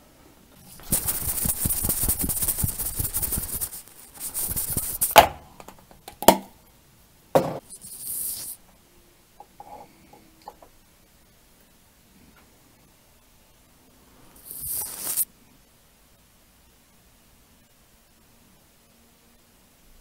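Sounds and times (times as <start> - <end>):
aerosol can spraying: 0.7 - 5.3, 7.8 - 8.6, 14.4 - 15.3.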